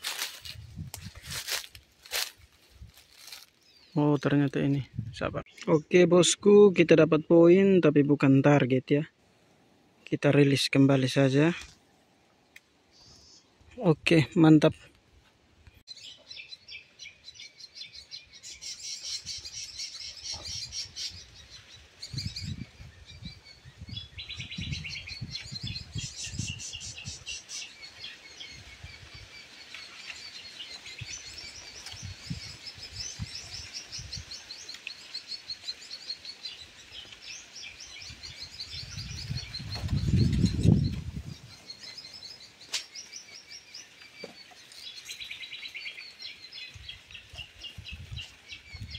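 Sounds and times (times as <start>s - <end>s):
small birds twittering: 0.0s - 7.1s, 12.8s - 14.6s, 15.7s - 48.9s
wind buffeting microphone: 0.4s - 1.6s, 4.8s - 5.4s, 20.4s - 27.2s, 31.0s - 34.4s, 38.0s - 41.7s, 46.8s - 48.9s.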